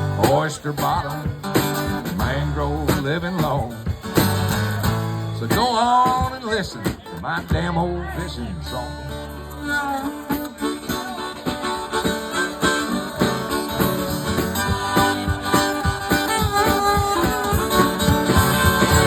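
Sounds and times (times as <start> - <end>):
strummed and plucked guitar: 0.0 - 19.0
harmonica playing: 9.1 - 19.0.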